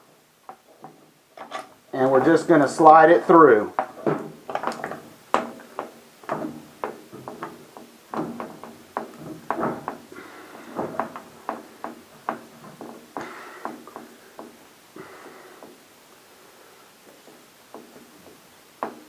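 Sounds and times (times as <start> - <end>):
light metallic clicks and knocks: 3.7 - 14.7.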